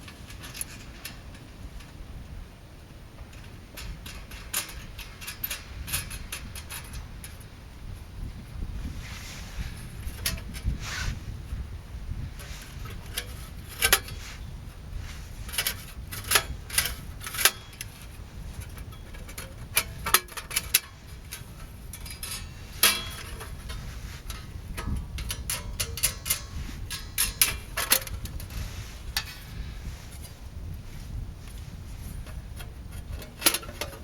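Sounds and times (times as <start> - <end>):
low steady rumble: 0.0 - 34.0
metal panels clinking: 3.3 - 7.5, 12.1 - 14.5, 15.1 - 30.7, 31.5 - 34.0.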